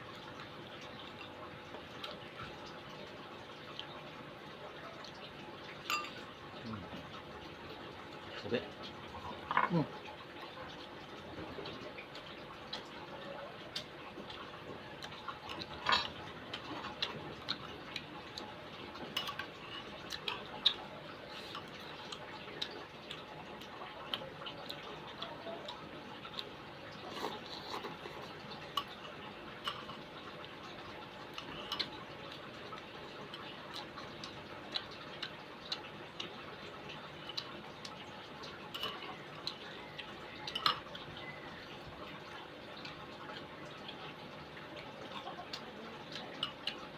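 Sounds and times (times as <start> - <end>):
chewing food: 0.0 - 46.9
spoon clinking against a bowl: 5.8 - 6.3.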